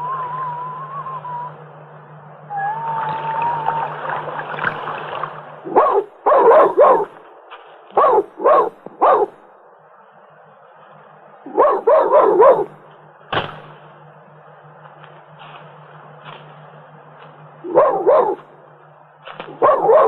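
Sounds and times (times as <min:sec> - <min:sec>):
dog barking: 0:05.7 - 0:07.2, 0:07.9 - 0:09.5, 0:11.5 - 0:12.8, 0:17.6 - 0:18.5, 0:19.5 - 0:20.0.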